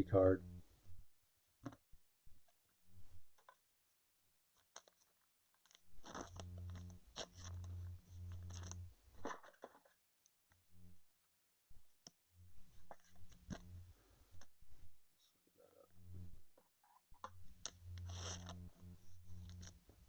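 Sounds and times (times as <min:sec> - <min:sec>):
trading cards and wrappers crinkling: 0:08.4 - 0:09.6, 0:18.0 - 0:18.6.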